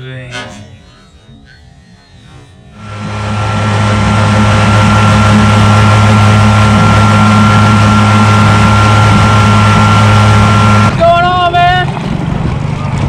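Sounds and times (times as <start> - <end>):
outboard motor running: 0.8 - 11.0.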